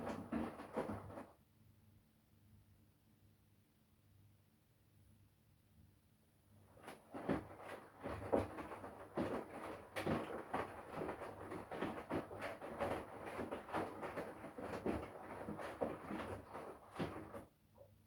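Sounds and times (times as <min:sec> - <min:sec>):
laundry sloshing in washing machine: 0:00.0 - 0:01.3, 0:06.7 - 0:17.5.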